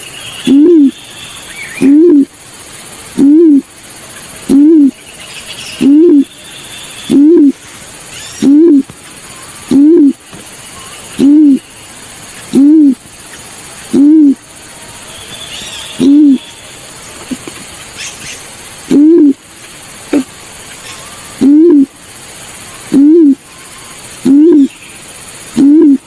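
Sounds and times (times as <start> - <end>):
bird hooting: 0.0 - 2.4, 3.1 - 3.7, 4.4 - 19.4, 20.1 - 22.0, 22.6 - 26.0
faint high chirps: 0.0 - 19.4.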